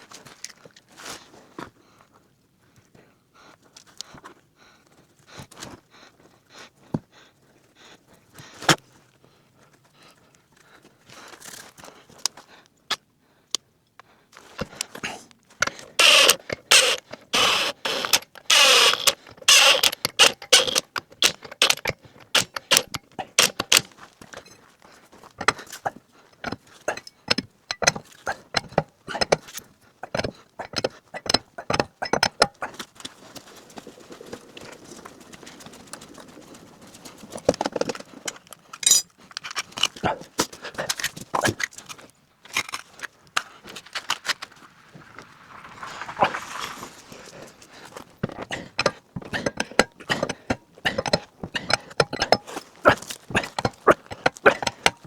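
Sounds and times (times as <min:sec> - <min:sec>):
sharp metallic clicks and clinks: 0:15.6 - 0:24.6, 0:38.8 - 0:39.1, 0:48.2 - 0:55.0.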